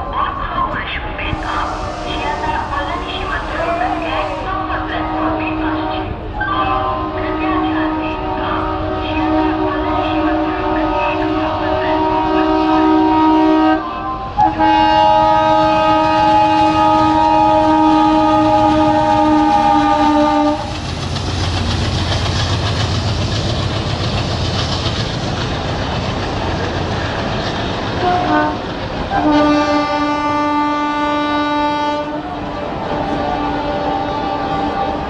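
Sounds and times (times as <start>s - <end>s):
locomotive horn: 1.4s - 2.6s, 3.4s - 20.8s, 28.0s - 35.0s
locomotive engine running: 2.2s - 29.2s
train wheels clattering: 18.4s - 30.3s.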